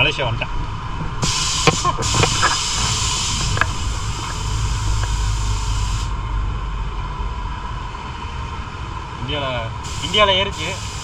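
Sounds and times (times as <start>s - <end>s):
low rumble: 0.5s - 10.4s
compressed air hissing: 1.2s - 6.2s, 9.8s - 11.0s.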